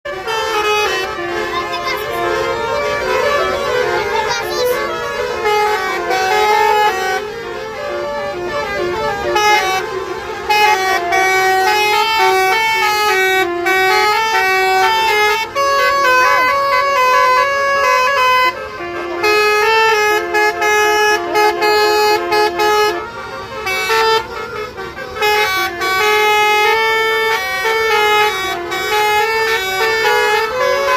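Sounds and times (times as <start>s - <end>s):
multi-tone air horn tune: 0.1s - 30.9s.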